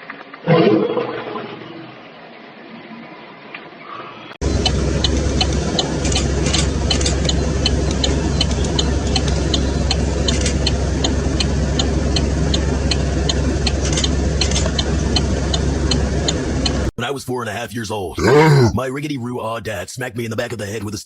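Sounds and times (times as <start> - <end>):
engine-like rumble with low hum: 4.4 - 16.9
sharp ticks: 4.6 - 16.8.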